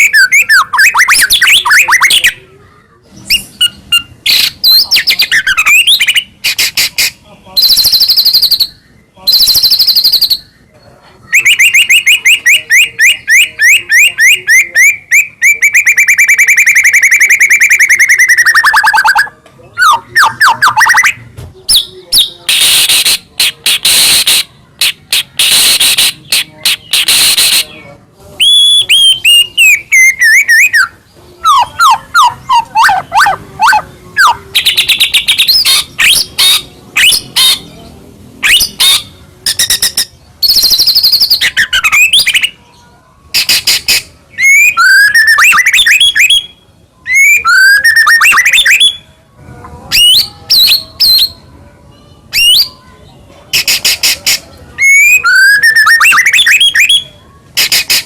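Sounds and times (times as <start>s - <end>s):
songbird singing varied song: 3.1s - 42.6s.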